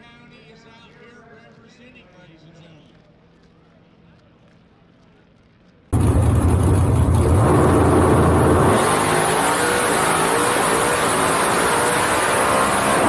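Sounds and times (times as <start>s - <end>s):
race car engine at full throttle: 6.0s - 13.0s.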